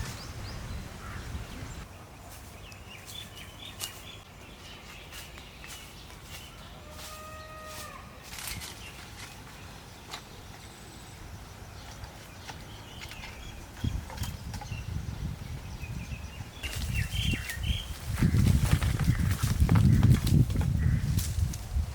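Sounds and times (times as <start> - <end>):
small birds chirping: 0.0 - 7.6, 8.4 - 21.9
rustling and knocking: 18.1 - 21.6.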